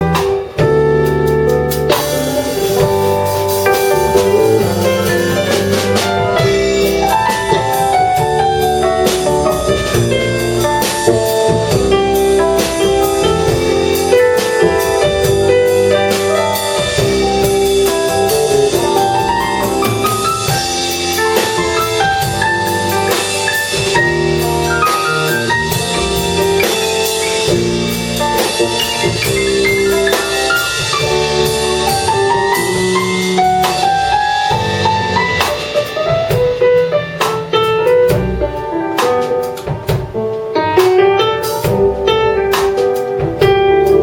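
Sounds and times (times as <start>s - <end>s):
bass: 0.0s - 44.0s
drum kit and cymbals: 0.0s - 44.0s
jazz band playing: 0.0s - 44.0s
piano runs: 0.0s - 44.0s.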